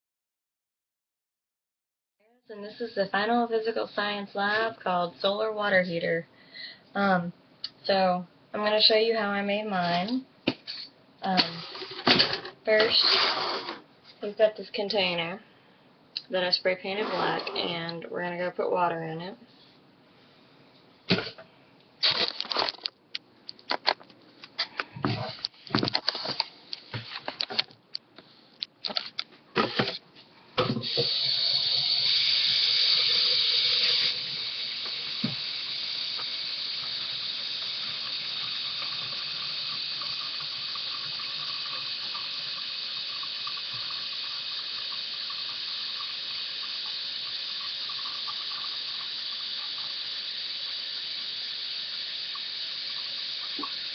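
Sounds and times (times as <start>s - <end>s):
clattering of objects being handled: 21.2s - 30.9s
water running from a tap: 30.8s - 53.9s.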